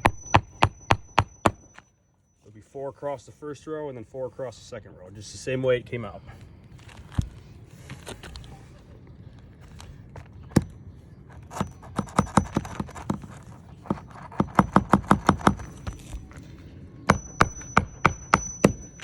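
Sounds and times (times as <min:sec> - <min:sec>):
hammer driving nails: 0:00.0 - 0:01.8, 0:10.5 - 0:16.4, 0:17.1 - 0:19.0.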